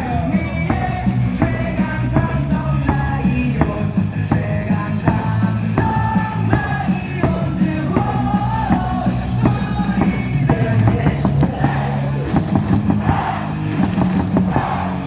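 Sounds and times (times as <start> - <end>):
crowd singing and shouting: 0.0 - 15.0
stadium music over loudspeakers: 0.0 - 15.0.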